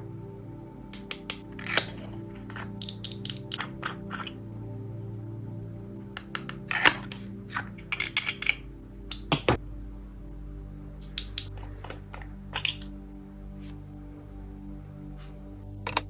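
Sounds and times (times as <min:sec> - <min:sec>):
quiet background music: 0:00.0 - 0:16.0
packaging clicks and taps: 0:01.0 - 0:04.4, 0:06.2 - 0:09.6, 0:11.0 - 0:12.9.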